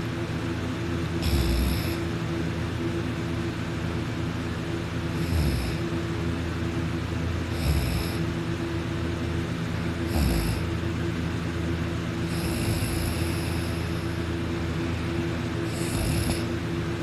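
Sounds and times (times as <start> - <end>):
steady hum: 0.0 - 17.0
person snoring: 1.2 - 2.1, 5.1 - 5.9, 7.5 - 8.4, 10.0 - 10.7, 12.2 - 14.2, 15.6 - 16.6.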